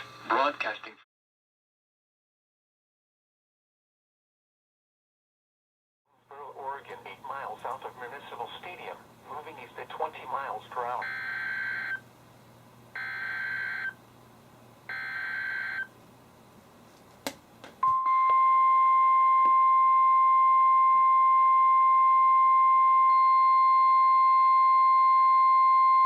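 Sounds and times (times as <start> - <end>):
steady warning alarm tone: 11.0 - 12.0, 13.0 - 14.0, 14.9 - 15.9.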